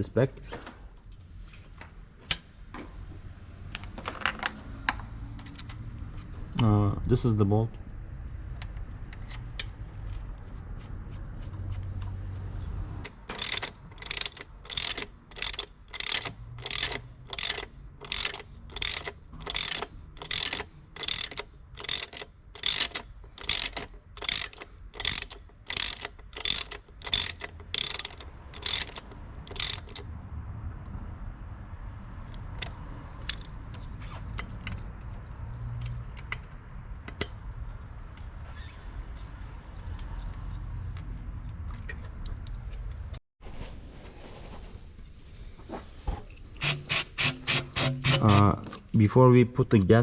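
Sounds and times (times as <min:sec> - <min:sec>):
ratchet wrench clicking: 0:13.3 - 0:30.0, 0:32.3 - 0:33.6, 0:46.6 - 0:48.4.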